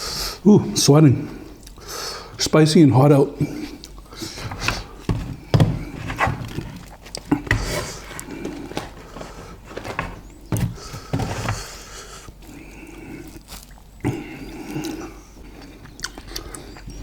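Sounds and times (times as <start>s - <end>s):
person chewing: 1.6s - 1.9s, 3.4s - 5.2s, 6.4s - 17.0s.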